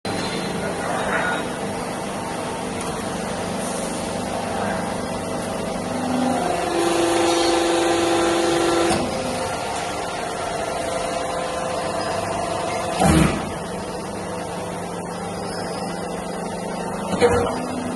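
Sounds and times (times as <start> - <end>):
machine hum with steady tones: 0.1 - 17.9.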